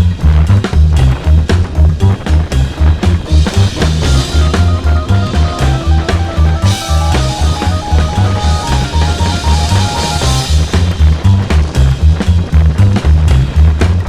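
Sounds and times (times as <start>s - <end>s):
drum and bass music: 0.0s - 14.0s
ride noise: 2.7s - 11.2s.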